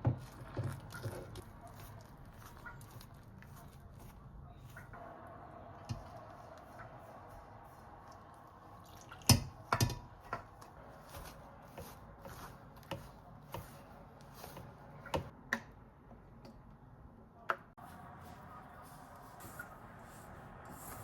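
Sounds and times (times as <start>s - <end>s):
kitchen utensils and dishes knocking: 9.3s - 10.5s.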